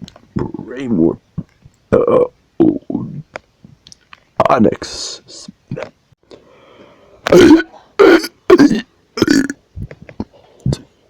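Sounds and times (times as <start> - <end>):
person burping loudly: 1.9 - 2.8, 7.3 - 9.6.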